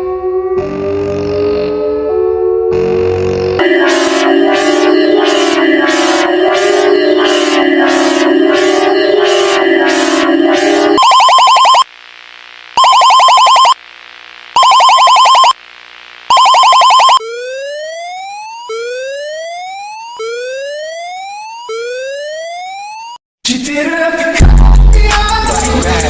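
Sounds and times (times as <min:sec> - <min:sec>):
rapidly pulsing alarm tone: 0:02.5 - 0:11.9, 0:12.8 - 0:13.8, 0:14.5 - 0:15.6, 0:16.3 - 0:23.2
rising whoop alarm: 0:16.3 - 0:23.2.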